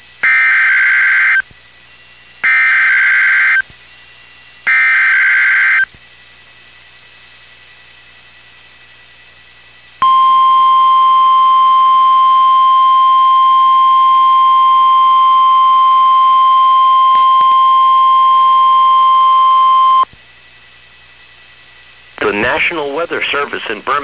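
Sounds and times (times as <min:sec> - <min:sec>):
steady alarm tone: 0:00.2 - 0:01.4, 0:02.4 - 0:03.6, 0:04.6 - 0:05.9, 0:10.0 - 0:20.1
radio hiss: 0:22.2 - 0:24.0.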